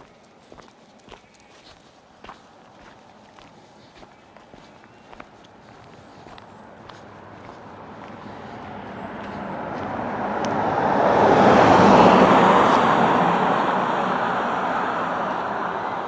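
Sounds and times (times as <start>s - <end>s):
car passing by: 5.5s - 16.0s.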